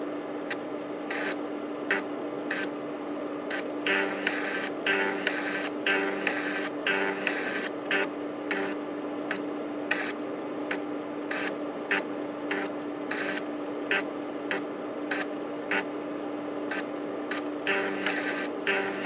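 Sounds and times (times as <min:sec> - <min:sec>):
floppy drive disk spinning hum: 0:00.0 - 0:19.0
stepper motor grating bursts: 0:03.5 - 0:08.8, 0:11.3 - 0:15.9, 0:16.7 - 0:19.0.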